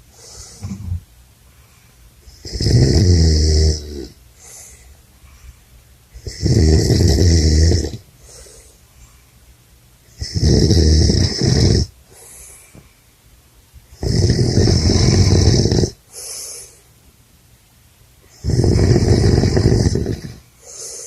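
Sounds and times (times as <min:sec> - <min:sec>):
man snoring: 0:00.2 - 0:01.0, 0:02.3 - 0:04.7, 0:06.2 - 0:08.0, 0:10.2 - 0:12.0, 0:14.0 - 0:16.8, 0:18.3 - 0:21.0.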